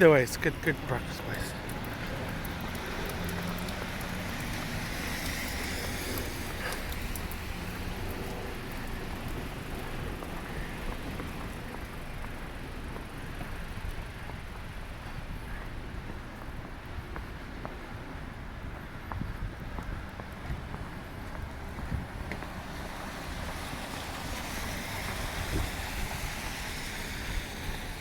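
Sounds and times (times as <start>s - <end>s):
traffic hissing on slushy road: 0.0s - 28.0s
wind on microphone: 18.0s - 28.0s.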